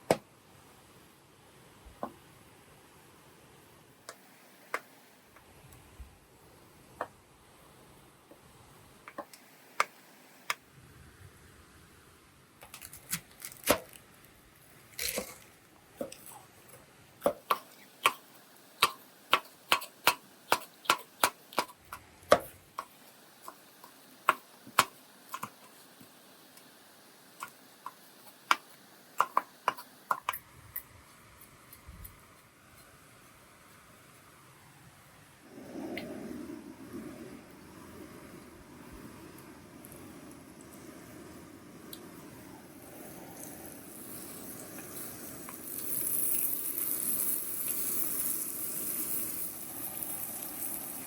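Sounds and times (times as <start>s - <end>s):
sharp taps and knocks: 27.4s - 30.4s.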